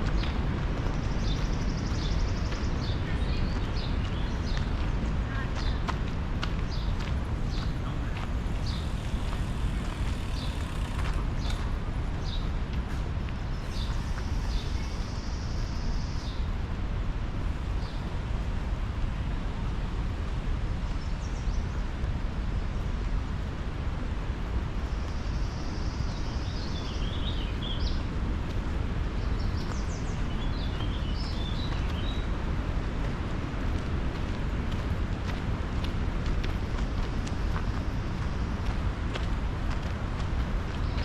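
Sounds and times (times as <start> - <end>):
steady low rumble: 0.0 - 41.0
birds chirping: 6.7 - 12.6, 13.4 - 16.5, 29.1 - 32.4.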